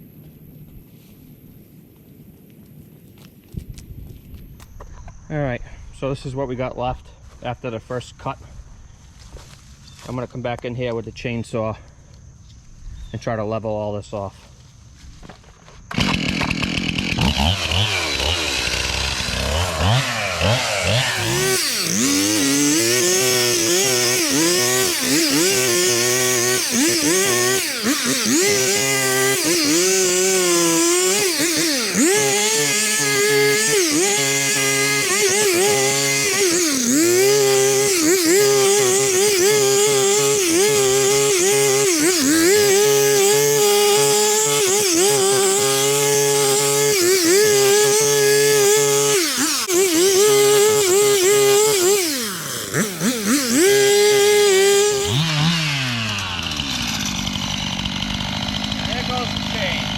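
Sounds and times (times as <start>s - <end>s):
chainsaw cutting brush: 14.4s - 59.9s.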